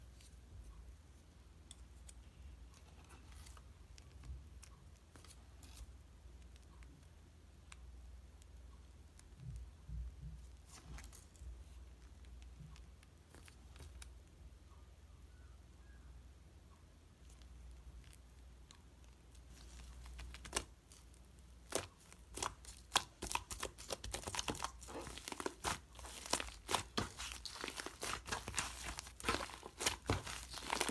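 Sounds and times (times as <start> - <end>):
low steady hum: 0.0 - 30.9
slime clicks and crackles: 19.4 - 30.9.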